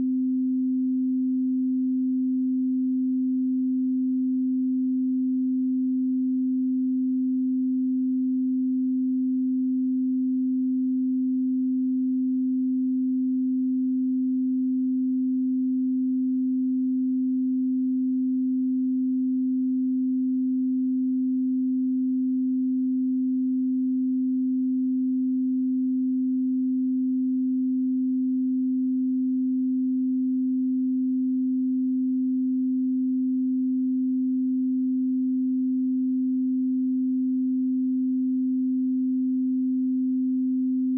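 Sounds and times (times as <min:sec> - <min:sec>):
pure sine tone: 0:00.0 - 0:40.9.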